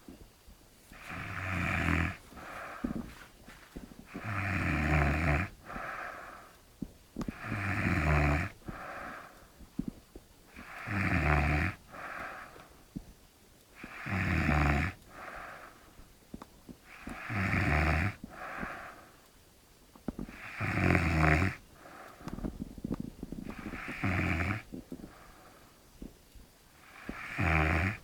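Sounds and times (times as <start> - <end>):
man snoring: 0.9 - 3.1, 4.1 - 6.5, 7.3 - 9.3, 10.5 - 12.5, 13.8 - 15.7, 16.9 - 19.0, 20.2 - 22.4, 23.4 - 25.2, 26.8 - 28.0
soft breath out: 0.9 - 4.3, 5.6 - 6.6, 8.6 - 10.0, 11.9 - 12.8, 15.1 - 16.0, 18.2 - 19.3, 21.8 - 22.6, 24.9 - 25.8.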